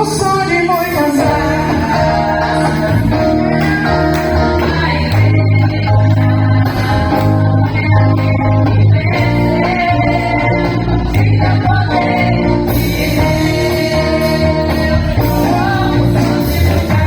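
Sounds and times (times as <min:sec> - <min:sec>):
gospel guitar music: 0:00.0 - 0:17.0.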